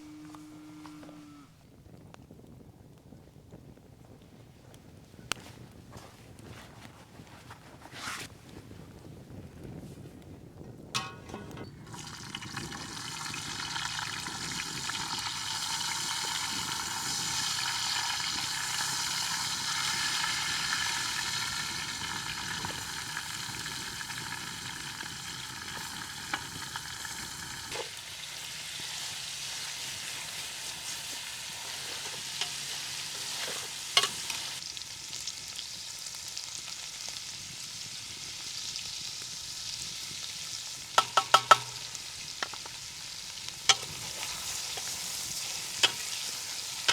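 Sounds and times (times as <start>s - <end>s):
food sizzling in hot oil: 11.0s - 46.9s.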